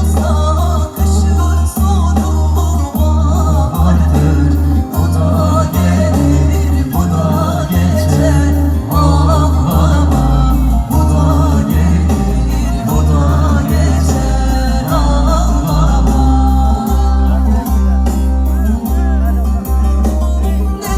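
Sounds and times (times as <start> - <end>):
heavy pulsing bass line: 0.0 - 20.9.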